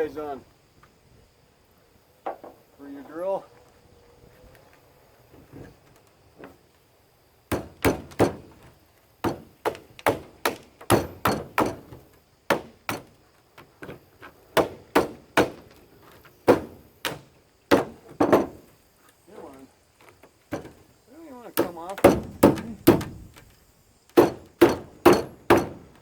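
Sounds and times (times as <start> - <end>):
hammer blows ringing on metal: 24.2 - 25.8.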